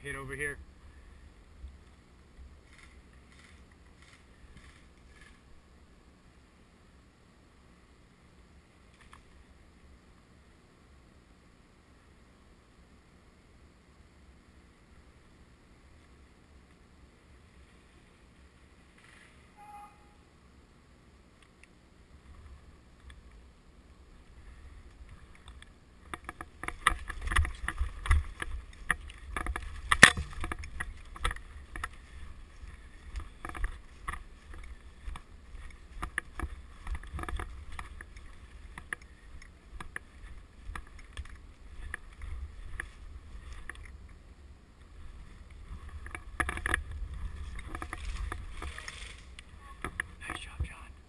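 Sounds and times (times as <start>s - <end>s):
rustling handling noise: 44.9s - 50.2s.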